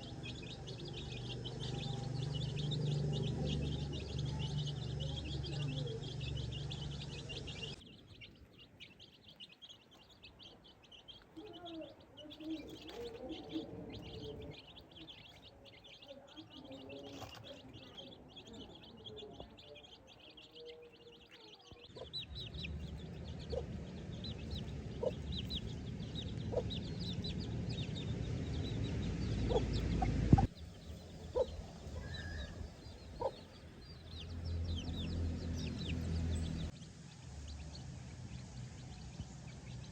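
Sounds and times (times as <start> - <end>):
baby chicks peeping: 0.0 - 39.9
chickens clucking: 11.3 - 33.6
low rumble: 22.0 - 39.9.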